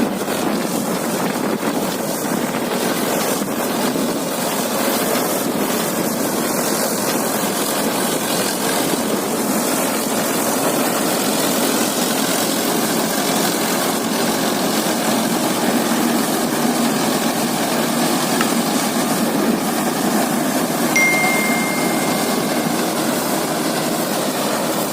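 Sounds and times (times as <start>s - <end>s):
tractor and harvester drone: 0.0s - 24.9s.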